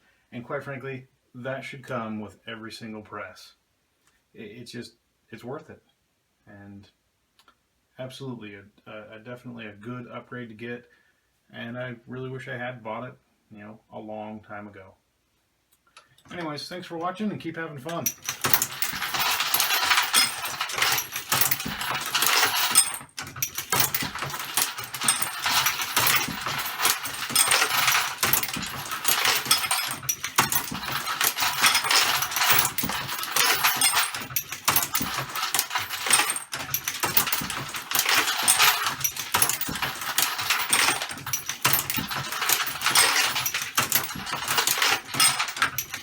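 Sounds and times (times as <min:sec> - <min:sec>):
reloading press clicking and rattling: 0:17.9 - 0:46.0.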